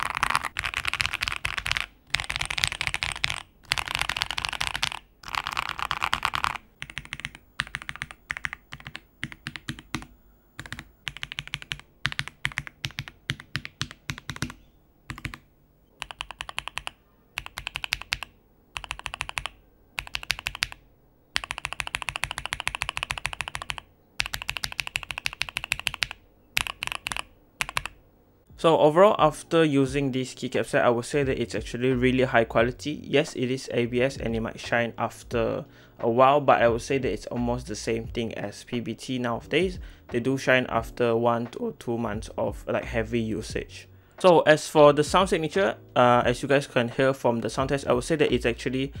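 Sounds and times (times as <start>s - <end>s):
mechanical keyboard typing: 0.0s - 20.8s, 21.4s - 28.0s.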